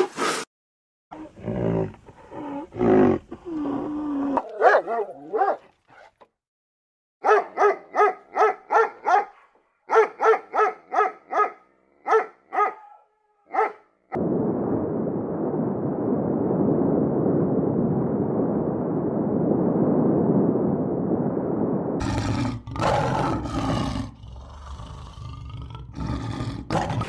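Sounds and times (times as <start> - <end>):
low rough growling: 1.2 - 4.6, 22.0 - 27.0
dog barking: 4.4 - 6.1, 7.2 - 13.9.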